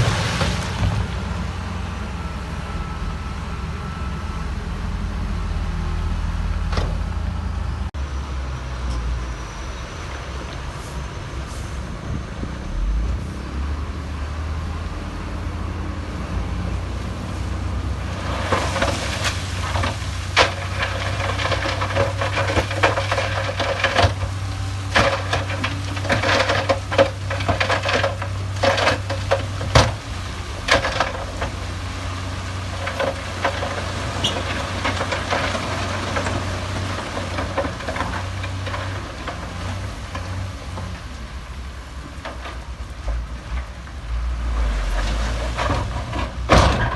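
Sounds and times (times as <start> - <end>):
diesel machinery engine hum: 0.0 - 46.9
rock and metal crunching: 18.0 - 46.9.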